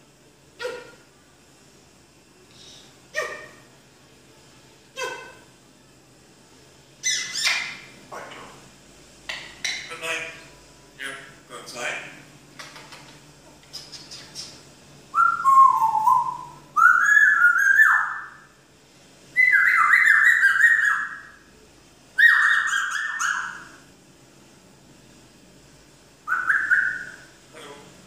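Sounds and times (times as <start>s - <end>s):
parrot whistling: 7.0s - 7.9s, 9.6s - 9.9s, 13.8s - 18.6s, 19.3s - 21.5s, 22.2s - 23.8s, 26.2s - 27.4s.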